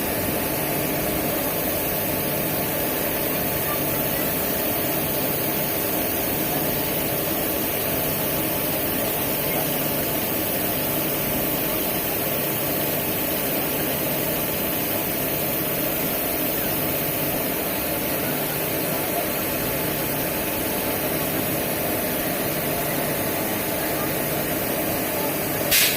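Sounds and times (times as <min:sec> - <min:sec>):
locomotive machinery whir and hum: 0:00.0 - 0:25.9.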